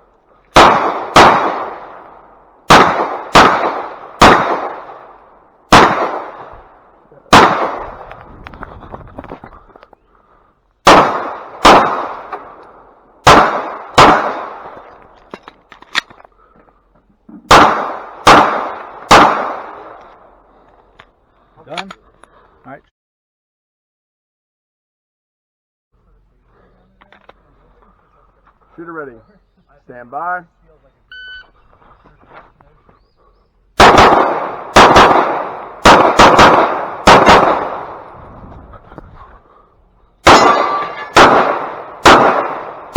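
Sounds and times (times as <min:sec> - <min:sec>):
pistol shots: 0:00.5 - 0:08.2, 0:10.8 - 0:15.2, 0:17.5 - 0:20.3, 0:33.8 - 0:38.2, 0:40.2 - 0:42.9.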